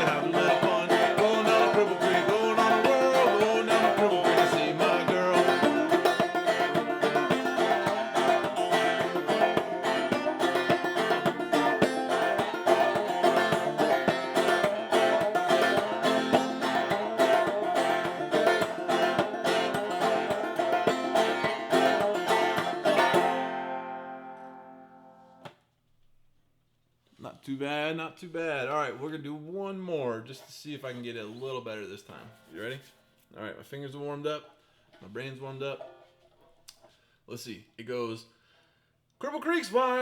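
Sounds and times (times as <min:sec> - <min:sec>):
banjo plucked notes: 0:00.0 - 0:25.4, 0:35.6 - 0:36.2.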